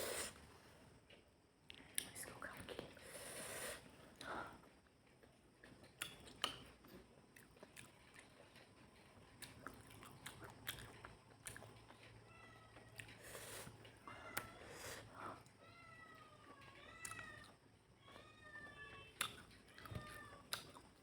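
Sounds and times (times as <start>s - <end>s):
person chewing food: 4.6s - 15.5s, 19.2s - 21.0s.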